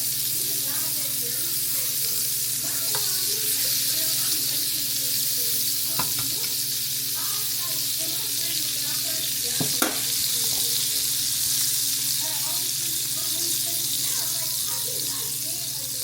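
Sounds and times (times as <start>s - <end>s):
eggs sizzling in a pan: 0.0s - 16.0s
utensil knocking against pan: 5.9s - 6.6s, 9.6s - 10.6s.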